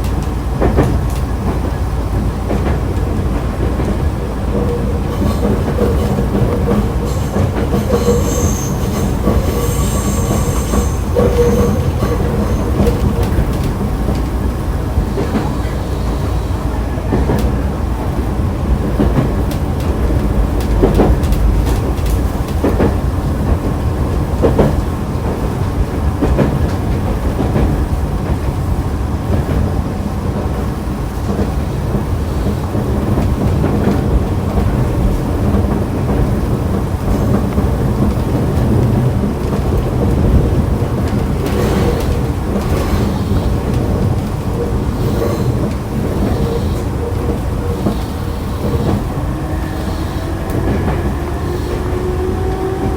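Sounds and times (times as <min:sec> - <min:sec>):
rail joint clicks: 0:00.0 - 0:52.9
train wheels rumbling on rail: 0:00.0 - 0:52.9
wheel squeal: 0:07.1 - 0:13.1.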